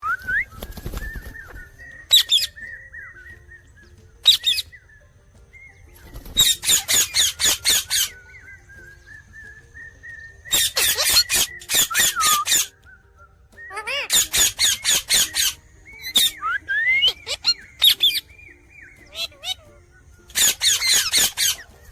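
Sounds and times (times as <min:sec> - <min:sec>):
high-pitched chirping whistle: 0:00.0 - 0:21.9
parrot squawking: 0:04.2 - 0:04.6, 0:06.4 - 0:08.2, 0:10.5 - 0:12.7, 0:13.7 - 0:18.2, 0:19.0 - 0:21.7.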